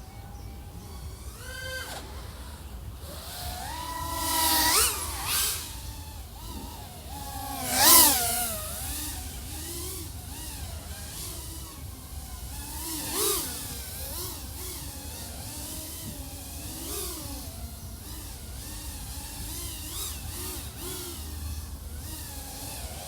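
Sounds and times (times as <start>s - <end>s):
drone motors whining: 0.0s - 23.0s.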